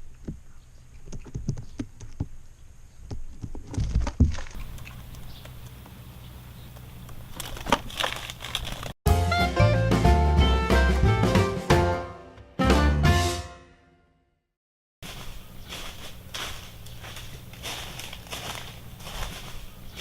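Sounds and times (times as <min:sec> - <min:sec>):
drum-led music: 0:09.1 - 0:13.5.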